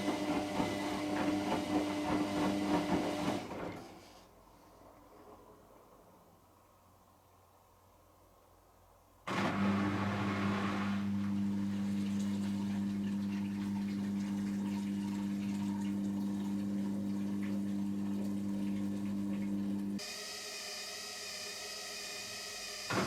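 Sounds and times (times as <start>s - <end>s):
washing machine electrical hum: 9.3s - 23.0s.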